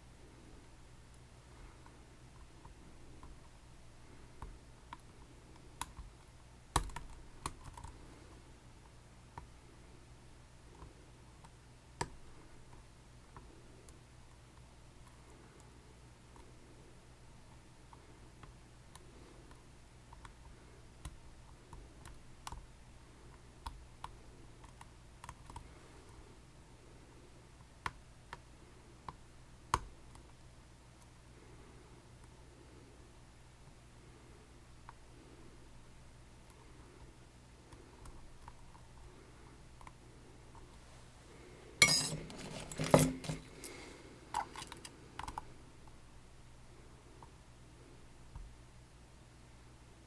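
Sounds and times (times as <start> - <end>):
metal lock parts clinking: 41.8 - 43.7.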